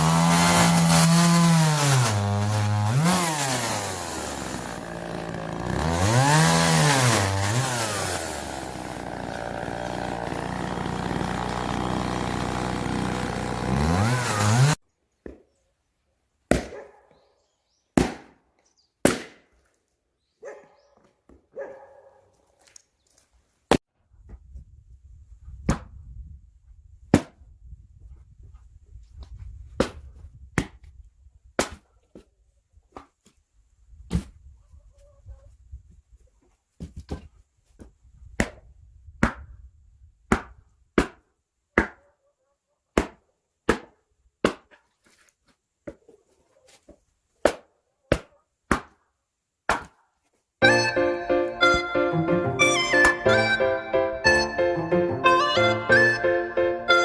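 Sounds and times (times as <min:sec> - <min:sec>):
chainsaw cutting wood: 0:00.0 - 0:14.8
axe splitting firewood: 0:00.0 - 0:15.4, 0:40.3 - 0:41.2, 0:43.0 - 0:45.2.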